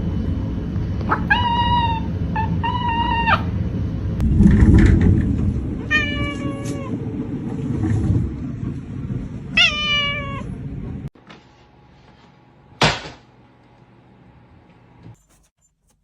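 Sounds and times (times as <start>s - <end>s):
low rumble: 0.0s - 11.1s
cat meowing: 1.1s - 3.6s, 5.9s - 7.0s, 9.6s - 10.5s.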